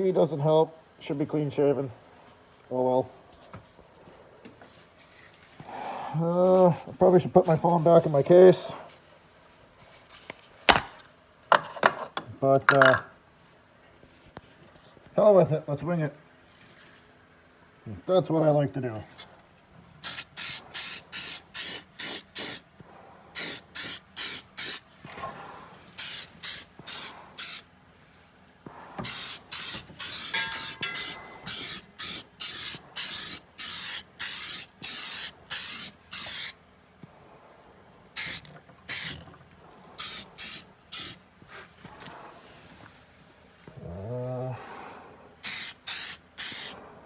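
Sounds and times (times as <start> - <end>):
aerosol can spraying bursts: 20.1 - 22.6, 23.4 - 24.8, 26.0 - 27.6, 29.0 - 36.6, 38.2 - 39.2, 40.0 - 41.2, 45.4 - 46.8.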